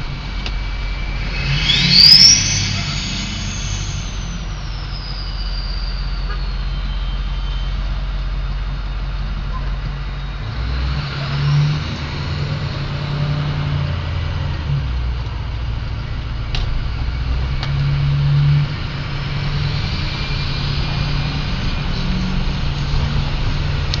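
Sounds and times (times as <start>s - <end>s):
high turbo whistle: 0.0s - 8.5s, 19.0s - 23.8s
diesel engine exhaust rumbling: 0.0s - 24.0s.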